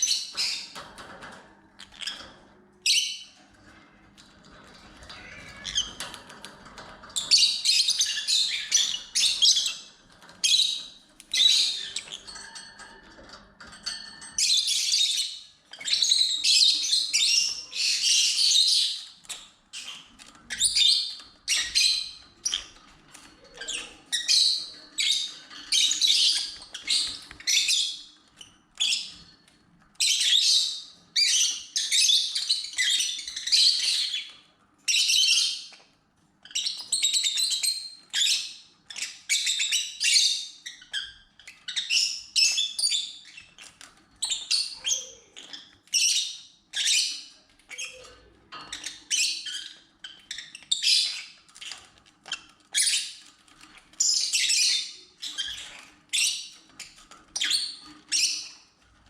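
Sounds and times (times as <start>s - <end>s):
lovebirds chirping: 30.0s - 58.7s.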